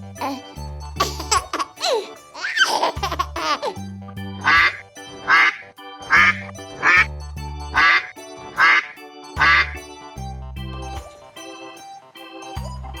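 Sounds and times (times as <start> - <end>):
children's music with pulsing bass: 0.0 - 13.0
duck quacking: 4.4 - 7.1, 7.7 - 9.8.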